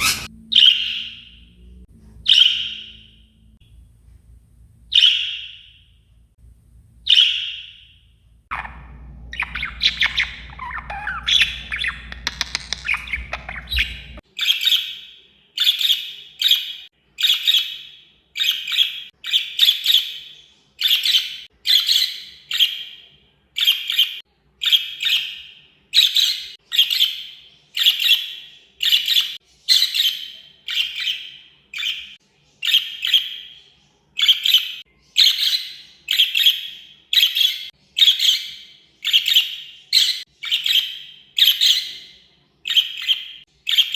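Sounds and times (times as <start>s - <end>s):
parrots chattering: 0.0s - 1.2s, 8.5s - 14.8s
parrot squawking: 0.0s - 1.4s, 2.2s - 3.2s, 8.5s - 14.9s
low rumble: 8.3s - 12.4s.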